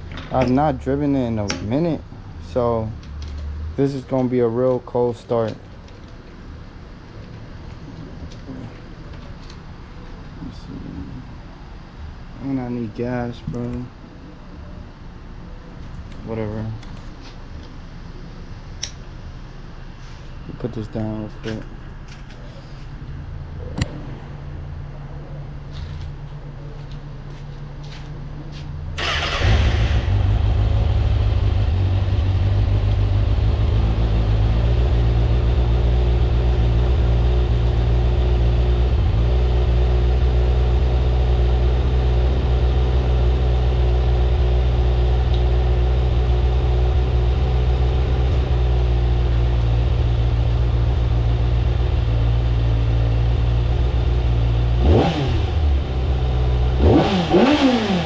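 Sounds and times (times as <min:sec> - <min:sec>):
motorcycle engine starting and idling: 0:28.9 - 0:58.0
motorcycle engine revving: 0:29.0 - 0:58.0.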